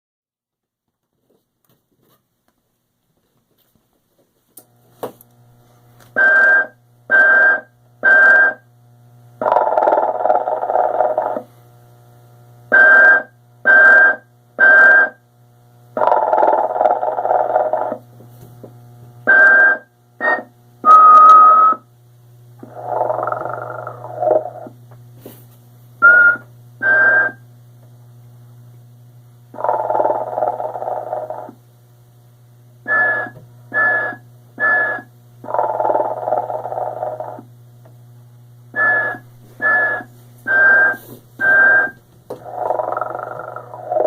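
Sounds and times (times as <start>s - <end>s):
low steady hum: 2.7s - 44.0s
long snore: 22.6s - 24.7s, 42.4s - 44.0s
short whistles: 32.9s - 35.1s, 38.8s - 42.0s.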